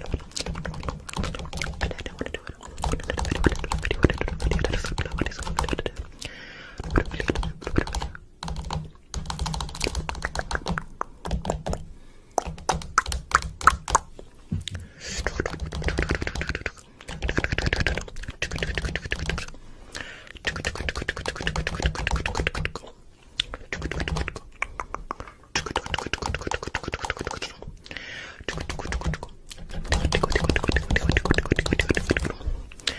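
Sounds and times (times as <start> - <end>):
rapid clicking: 0.0 - 6.1, 6.8 - 11.8.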